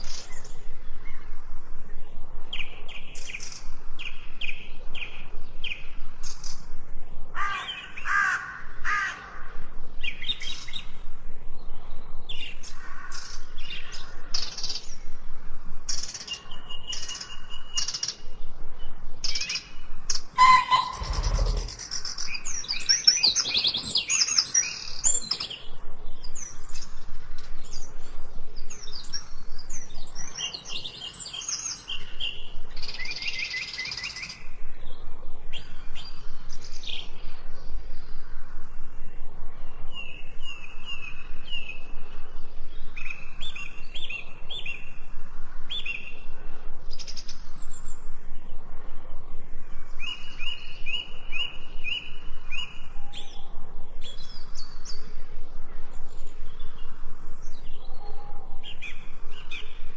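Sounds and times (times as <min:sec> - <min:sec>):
songbirds chirping and singing: 0:00.0 - 0:59.9
bird repeating quick high phrase: 0:20.4 - 0:21.8.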